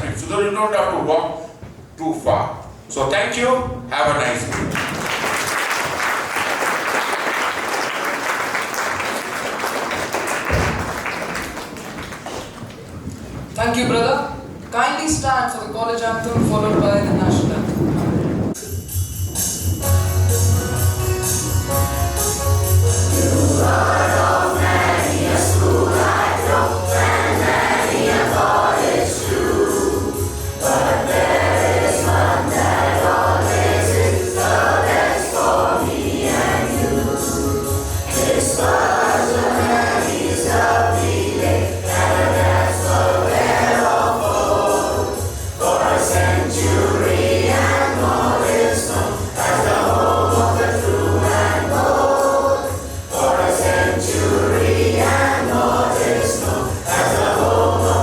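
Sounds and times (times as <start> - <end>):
choir of students singing: 23.0 - 58.0.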